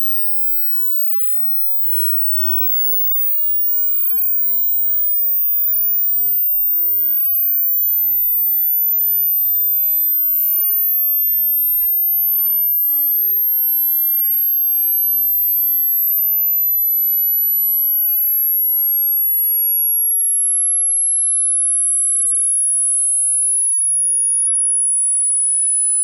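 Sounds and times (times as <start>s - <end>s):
high sine tone sweeping down: 0.0s - 18.8s.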